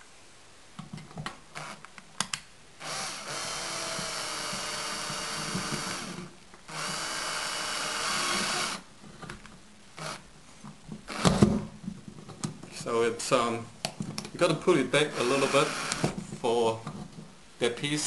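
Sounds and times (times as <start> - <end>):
power drill driving a screw: 1.6 - 1.8, 2.8 - 8.8, 10.0 - 10.2, 11.1 - 11.5, 15.0 - 16.2.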